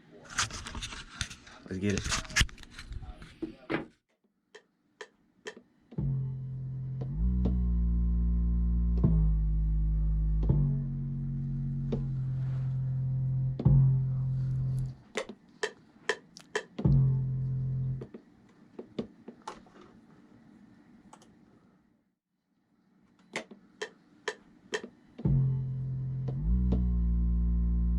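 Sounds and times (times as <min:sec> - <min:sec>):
low sustained bass notes: 0:06.0 - 0:15.0, 0:16.9 - 0:18.0, 0:25.3 - 0:27.9.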